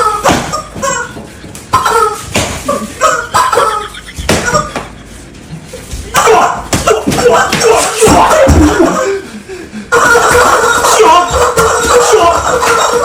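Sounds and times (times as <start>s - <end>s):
people laughing: 0.6s - 13.0s
sharp smacks and knocks: 2.3s - 2.6s
voices: 6.0s - 13.0s.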